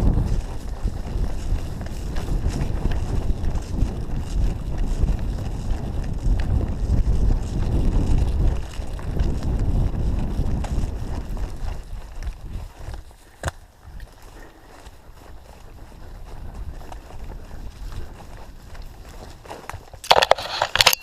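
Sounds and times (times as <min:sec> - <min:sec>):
running footfalls: 0:00.0 - 0:20.1
wind buffeting microphone: 0:00.0 - 0:20.1.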